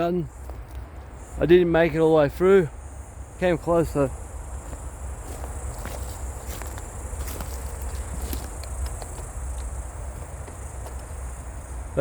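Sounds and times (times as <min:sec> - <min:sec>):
insect chorus: 0:00.0 - 0:12.0
low outdoor rumble: 0:00.0 - 0:12.0
light clicks and scuffs: 0:04.6 - 0:11.2.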